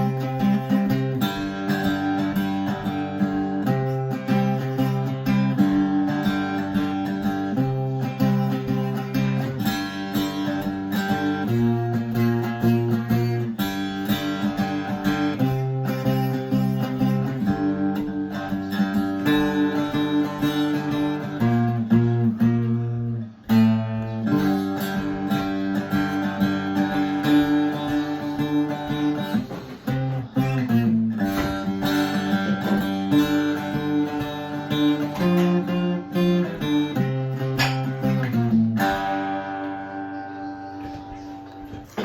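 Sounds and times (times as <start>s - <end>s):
flatpicked string instrument jig: 0.0s - 40.4s.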